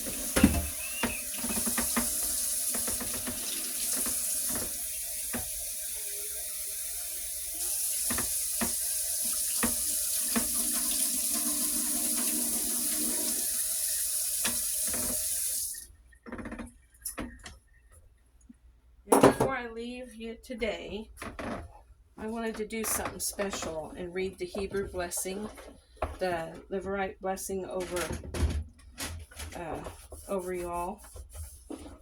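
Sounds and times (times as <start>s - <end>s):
dishes clinking and knocking: 0.0s - 5.5s
tap running into sink: 0.0s - 16.6s.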